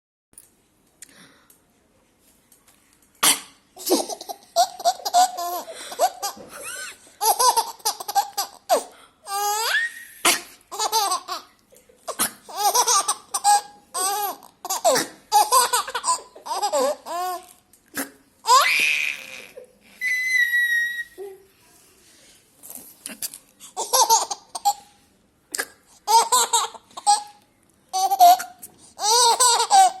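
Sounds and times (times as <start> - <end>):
sneezing sounds: 3.2 - 3.6, 10.1 - 10.6, 14.9 - 15.2, 17.9 - 18.2
baby laughing: 3.2 - 17.5, 23.8 - 24.9, 26.0 - 30.0.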